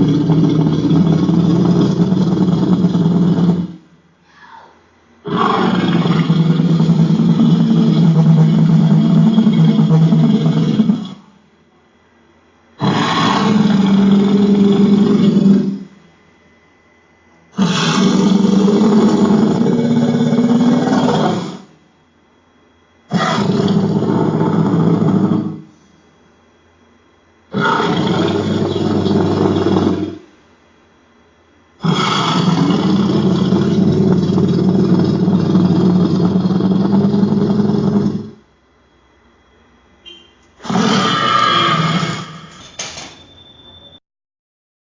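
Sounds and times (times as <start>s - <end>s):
monster roaring: 0.0s - 3.8s, 5.3s - 11.2s, 12.8s - 15.9s, 17.6s - 21.7s, 23.1s - 25.7s, 27.5s - 30.2s, 31.8s - 38.4s, 40.6s - 42.6s.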